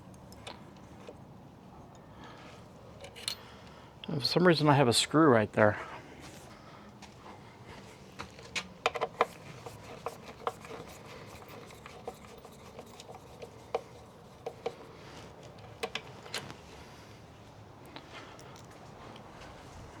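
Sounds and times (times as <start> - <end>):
hand tools clicking and knocking: 8.4 - 16.6.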